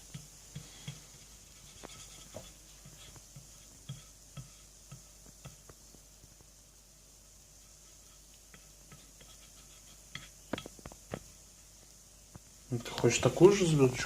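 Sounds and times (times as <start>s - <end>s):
light taps and scratching: 0.1s - 6.0s, 7.6s - 11.4s.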